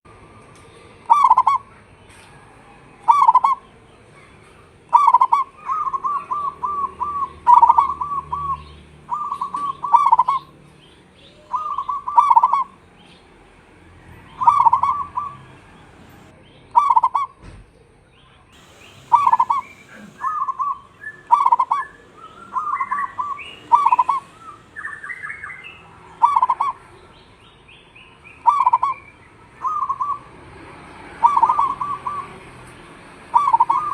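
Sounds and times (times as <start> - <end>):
dove cooing: 3.0 - 3.7, 4.9 - 10.5, 11.4 - 12.8, 14.4 - 17.2, 18.6 - 27.0, 28.4 - 29.0, 31.2 - 32.4, 33.3 - 33.9
bird chirps: 3.0 - 13.4, 14.2 - 17.3, 18.6 - 30.3, 31.2 - 33.9.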